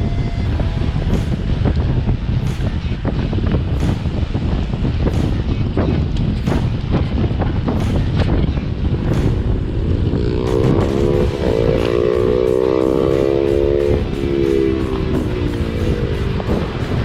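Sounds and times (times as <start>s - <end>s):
wind buffeting microphone: 0.0s - 17.0s
held rising pitched sound: 8.9s - 17.0s.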